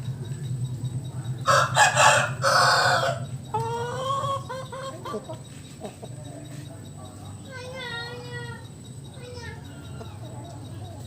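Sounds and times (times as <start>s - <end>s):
steady low hum: 0.0s - 11.0s
rooster crowing: 1.4s - 4.6s.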